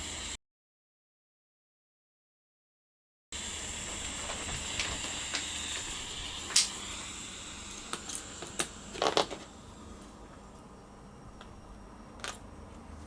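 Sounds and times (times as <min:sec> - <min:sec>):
small tools clicking and tapping: 0:07.9 - 0:09.5, 0:12.2 - 0:12.5.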